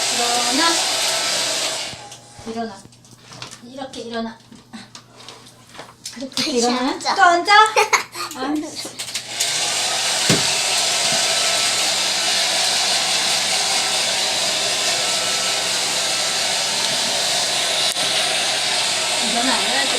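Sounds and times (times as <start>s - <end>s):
hair dryer blowing: 0.0s - 2.4s, 9.0s - 19.9s
short knock: 10.3s - 10.5s.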